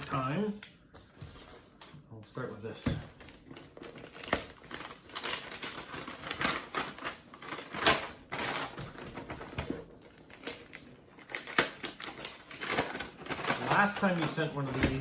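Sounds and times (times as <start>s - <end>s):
wrapping torn off cardboard box: 3.6s - 14.7s.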